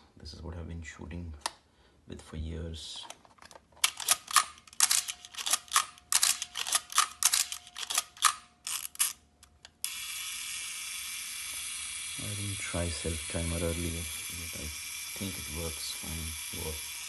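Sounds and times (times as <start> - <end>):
camera mechanical clicks: 3.8 - 12.1.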